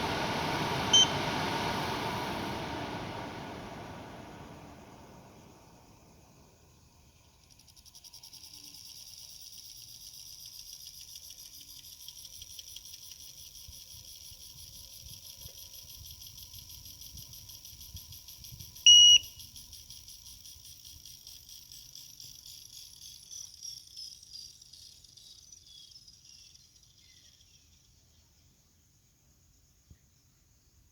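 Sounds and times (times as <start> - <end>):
air purifier fan whining: 0.0 - 7.3, 17.9 - 19.4
short loud beep: 0.9 - 1.2, 18.9 - 19.3.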